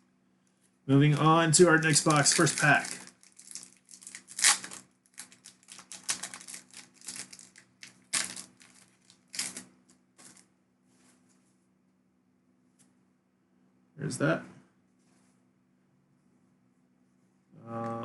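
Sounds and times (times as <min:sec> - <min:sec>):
card packaging crinkling: 0:01.1 - 0:10.5.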